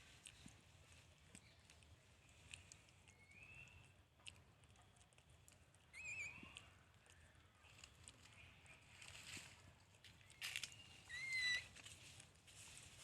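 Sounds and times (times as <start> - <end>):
baby monkey crying: 11.1 - 11.7.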